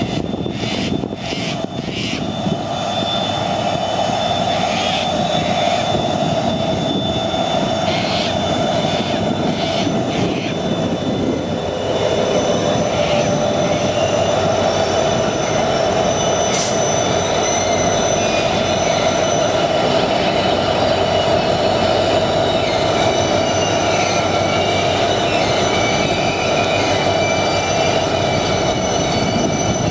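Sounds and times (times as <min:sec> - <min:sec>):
train rumbling: 0:00.0 - 0:29.9
sharp squeak: 0:11.9 - 0:29.9.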